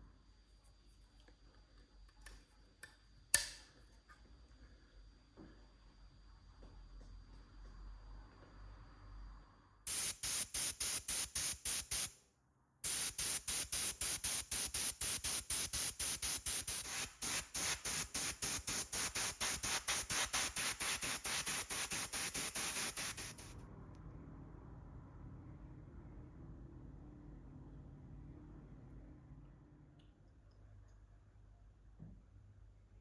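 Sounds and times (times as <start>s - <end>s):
spray hissing in short pulses: 9.9s - 12.2s, 12.8s - 23.6s.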